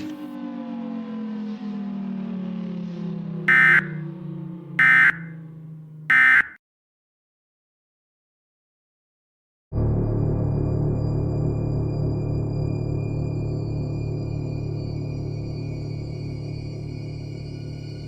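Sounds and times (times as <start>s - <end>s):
siren winding down: 0.0s - 6.6s
electronic data bursts: 3.5s - 4.0s, 4.8s - 5.3s, 6.1s - 6.6s.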